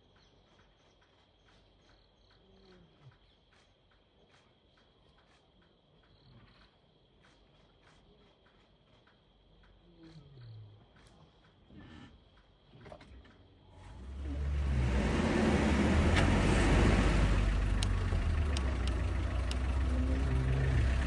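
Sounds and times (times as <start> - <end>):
sharp ticks: 0.0 - 12.7, 17.6 - 21.0
vehicle engine running: 13.7 - 21.0.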